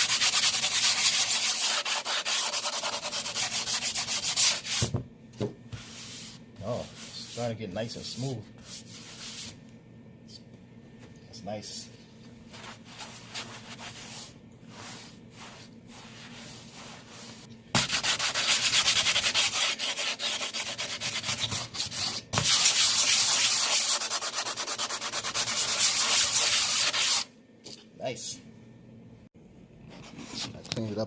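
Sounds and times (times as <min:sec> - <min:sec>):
sandpaper scrubbing fiberglass: 0:00.0 - 0:04.8, 0:12.5 - 0:27.3.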